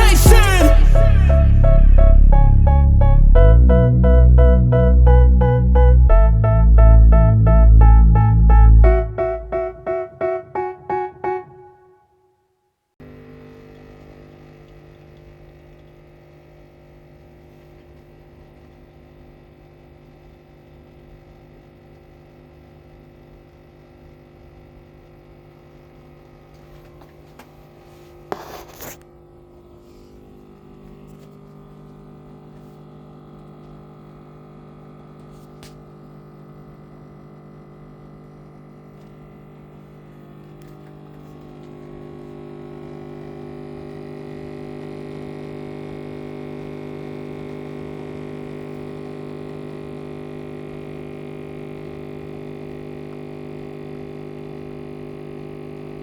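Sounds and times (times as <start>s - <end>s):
coffee machine humming: 13.0s - 23.2s, 30.2s - 56.0s.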